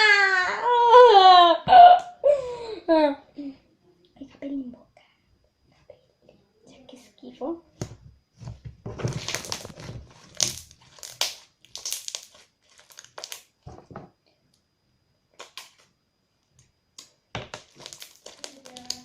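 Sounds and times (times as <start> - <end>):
crunchy slime squeezed by hand: 8.4 - 13.6, 15.4 - 15.9, 17.0 - 19.0.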